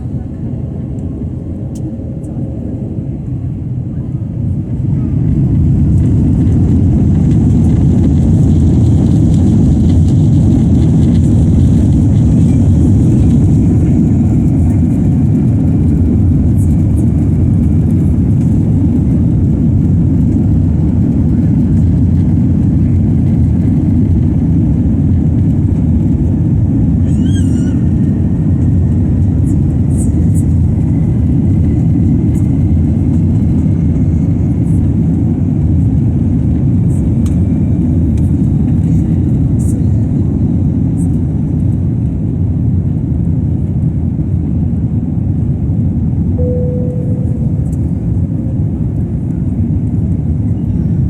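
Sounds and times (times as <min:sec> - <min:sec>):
jet engines and airflow rumble: 0:00.0 - 0:51.0
faint wavering high-pitched sound: 0:46.4 - 0:48.9.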